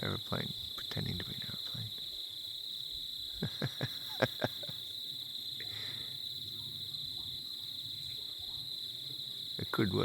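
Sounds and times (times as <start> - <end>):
night insects trilling: 0.0 - 10.0.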